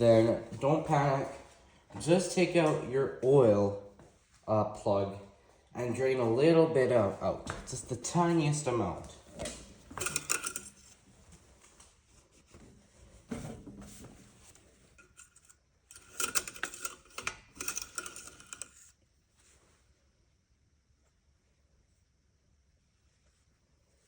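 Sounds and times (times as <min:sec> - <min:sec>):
metal tools clinking and rattling: 0:09.3 - 0:11.0, 0:15.0 - 0:18.9.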